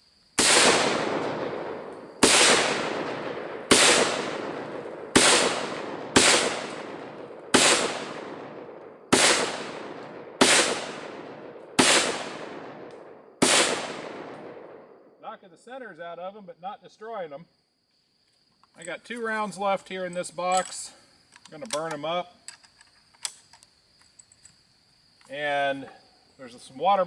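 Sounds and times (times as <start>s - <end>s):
rifle shots echoing: 0.4s - 15.0s.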